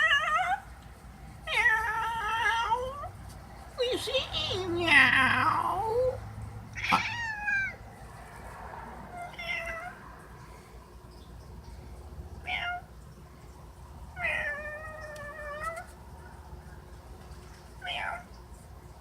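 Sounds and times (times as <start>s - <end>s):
cat meowing: 1.5s - 3.1s, 6.8s - 7.8s, 9.1s - 10.0s, 12.4s - 12.9s, 14.2s - 15.9s, 17.8s - 18.3s.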